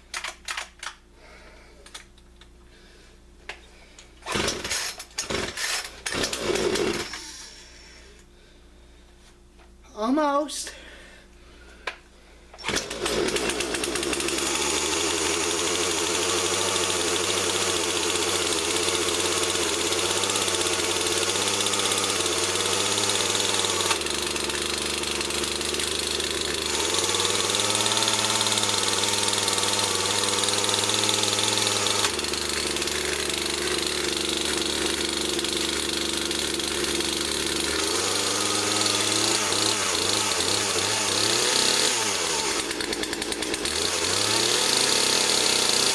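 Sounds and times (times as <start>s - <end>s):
chainsaw engine running: 4.2s - 7.6s, 12.6s - 45.9s.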